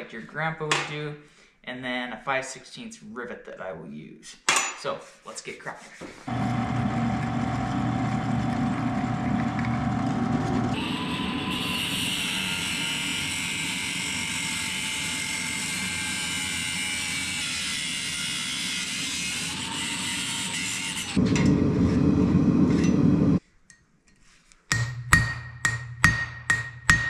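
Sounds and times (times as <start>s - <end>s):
shop equipment running: 6.3s - 23.4s.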